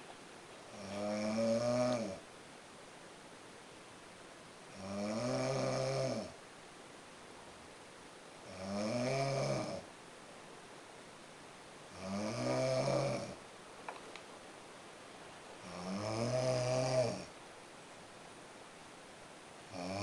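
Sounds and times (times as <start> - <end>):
loud snoring: 0.7 - 2.2, 4.7 - 6.4, 8.4 - 9.9, 11.9 - 13.4, 15.6 - 17.4, 19.7 - 20.0.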